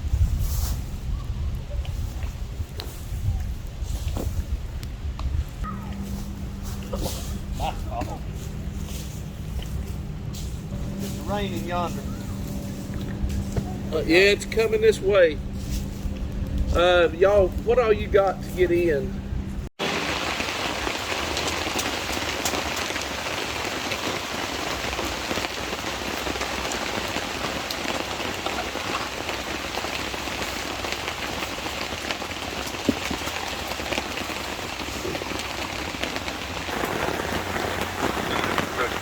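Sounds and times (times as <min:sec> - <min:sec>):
steady rain falling: 0:05.9 - 0:15.3, 0:19.8 - 0:39.0
raindrops ticking close by: 0:19.8 - 0:39.0.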